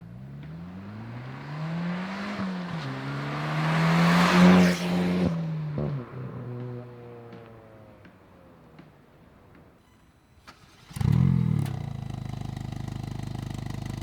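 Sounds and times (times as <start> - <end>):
car engine accelerating hard: 0.0 - 7.2.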